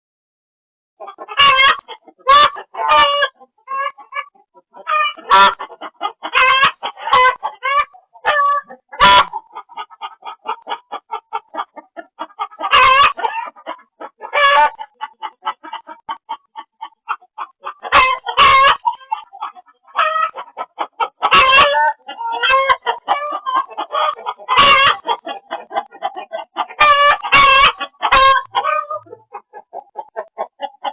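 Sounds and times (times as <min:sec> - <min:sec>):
chickens clucking: 0:01.0 - 0:30.9
chickens squawking: 0:01.0 - 0:30.9.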